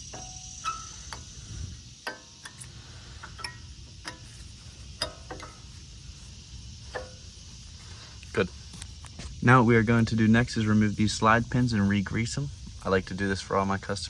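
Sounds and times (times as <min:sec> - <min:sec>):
light metallic clicks and taps: 0:02.0 - 0:05.8, 0:06.9 - 0:07.4.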